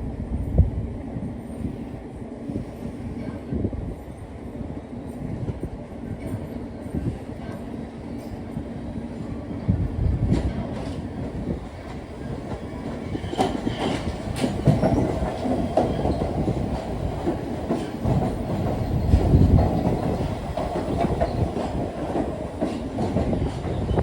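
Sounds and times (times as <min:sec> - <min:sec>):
subway train rumbling: 0:00.0 - 0:24.0
wheels clacking over rail joints: 0:10.2 - 0:24.0.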